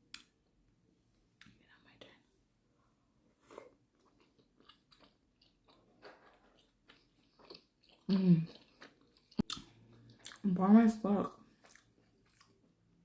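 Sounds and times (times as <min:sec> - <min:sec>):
wet chewing: 0:03.5 - 0:10.5, 0:11.5 - 0:12.7.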